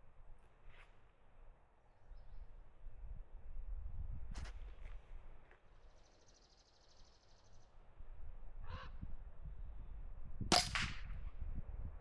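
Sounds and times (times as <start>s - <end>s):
low wind rumble: 7.8s - 12.0s.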